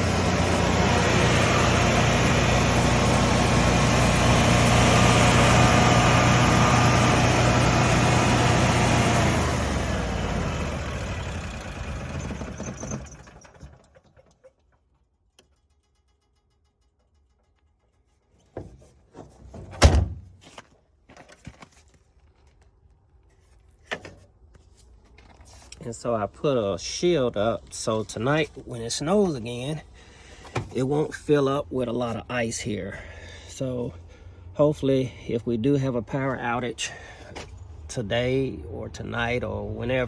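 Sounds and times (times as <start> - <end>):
generator engine running: 0.0 - 14.3.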